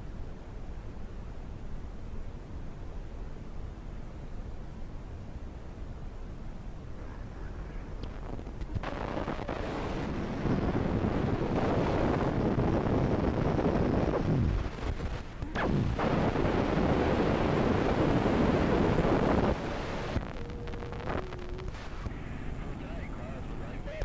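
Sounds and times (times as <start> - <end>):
harsh static noise: 7.8 - 24.0.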